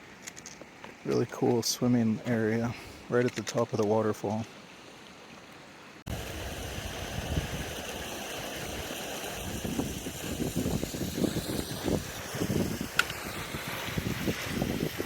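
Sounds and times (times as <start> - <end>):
wind buffeting microphone: 6.1 - 15.0.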